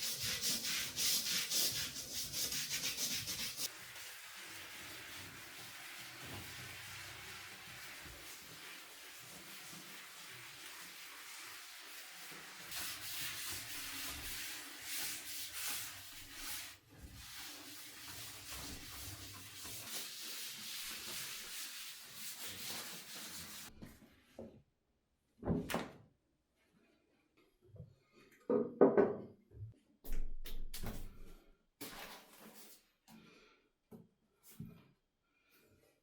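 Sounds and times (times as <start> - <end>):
wet wiping of floor: 0.0 - 23.7.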